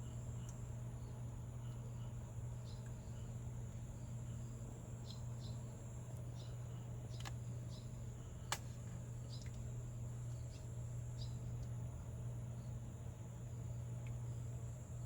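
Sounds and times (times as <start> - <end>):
steady low hum: 0.0 - 15.0
sharp clicks: 8.5 - 8.7.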